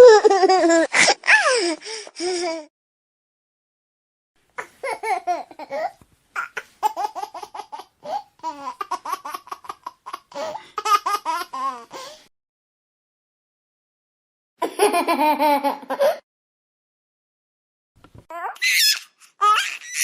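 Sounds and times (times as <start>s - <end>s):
baby laughing: 0.0s - 2.6s, 4.6s - 12.1s, 14.6s - 16.2s, 18.3s - 20.0s.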